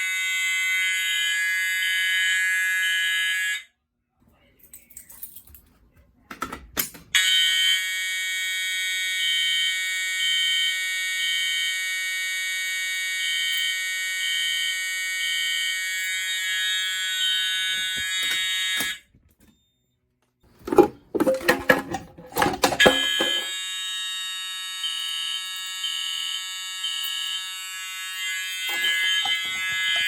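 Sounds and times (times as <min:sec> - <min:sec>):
buzzy fire alarm horn: 0:00.0 - 0:03.8, 0:07.2 - 0:19.2, 0:22.6 - 0:30.0
alarm horn beeping: 0:07.2 - 0:19.2, 0:22.6 - 0:30.0.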